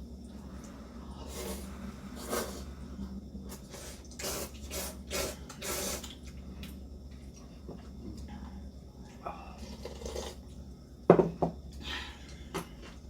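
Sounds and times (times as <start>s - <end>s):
noodles slurped: 1.2s - 2.7s, 9.6s - 10.4s.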